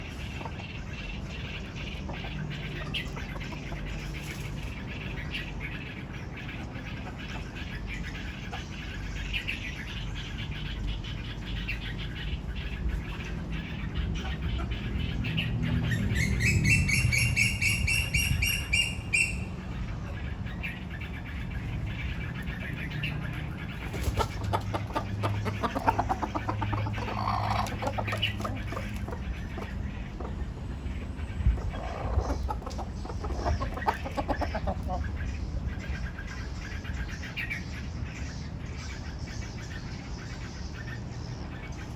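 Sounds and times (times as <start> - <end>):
chickens clucking: 0.0 - 41.9
bird high-pitched trill: 15.9 - 19.5.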